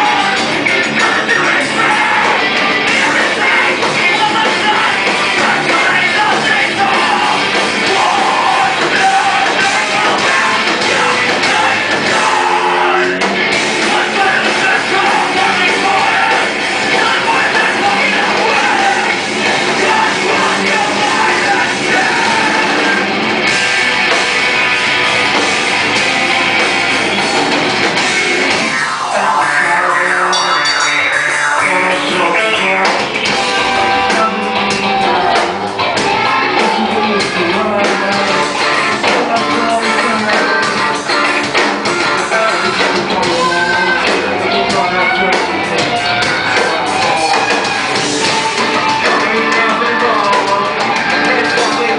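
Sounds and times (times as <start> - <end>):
rock band playing live: 0.0 - 51.9.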